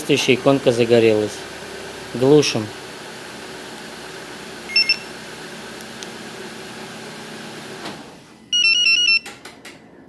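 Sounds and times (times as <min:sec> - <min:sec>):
car engine idling: 0:00.0 - 0:08.3
short electronic beeps: 0:04.7 - 0:05.1
stepped beeping melody: 0:04.7 - 0:05.2.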